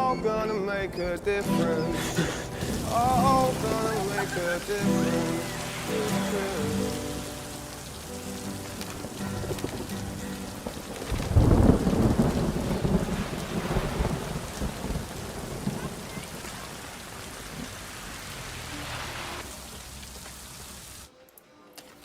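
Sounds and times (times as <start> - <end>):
thunder rumbling: 0.0 - 20.0
steady rain: 1.4 - 21.2.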